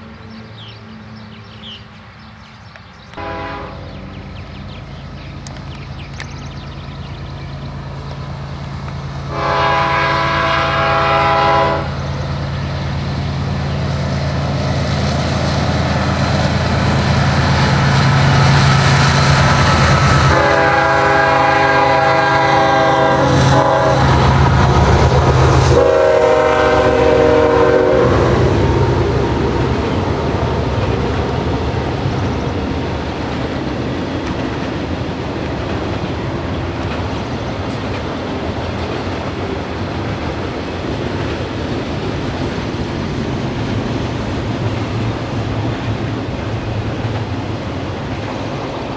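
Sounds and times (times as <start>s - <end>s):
locomotive drone: 0.0s - 48.9s
train horn blasts: 3.2s - 4.0s, 9.3s - 12.0s, 20.1s - 24.3s, 25.6s - 28.4s.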